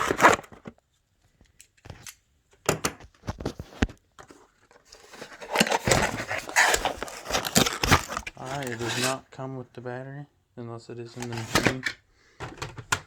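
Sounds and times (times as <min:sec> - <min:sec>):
packaging clicks and rustles: 0:01.6 - 0:09.2, 0:11.2 - 0:13.0.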